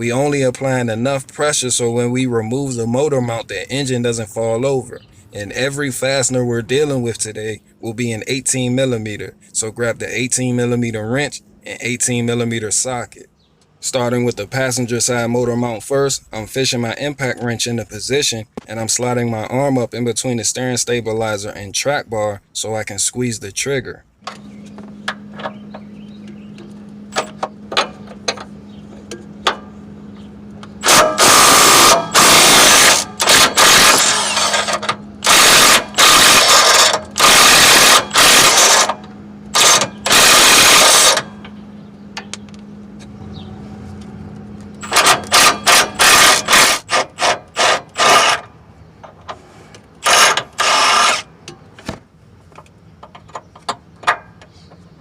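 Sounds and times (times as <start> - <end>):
low hum: 24.2 - 46.8
impact wrench hammering: 30.7 - 41.6, 44.8 - 48.5, 50.0 - 51.2.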